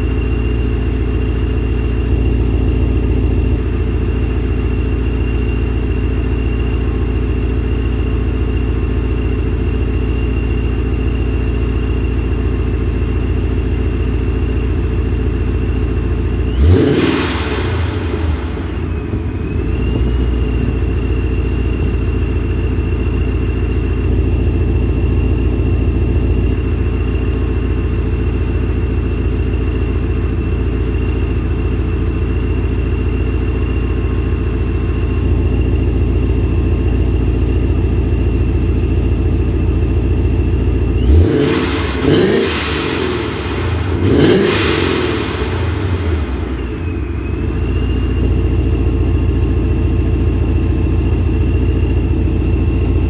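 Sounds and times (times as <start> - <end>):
car engine idling and revving: 0.0 - 53.0
high whine: 14.6 - 53.0.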